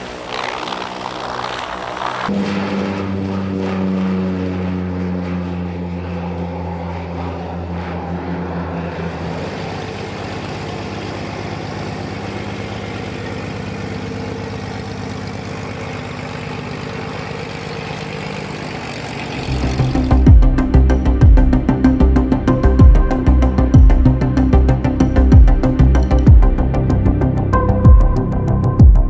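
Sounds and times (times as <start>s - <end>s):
propeller aircraft engine drone: 0.0s - 29.0s.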